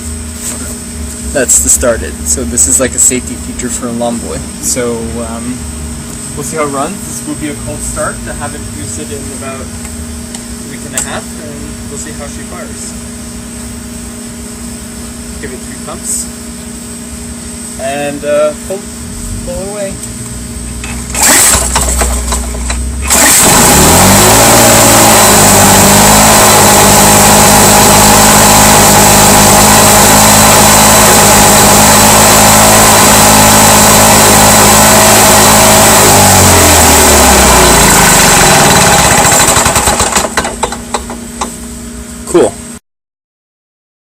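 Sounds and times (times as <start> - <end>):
lawn mower engine starting: 20.8 - 41.2.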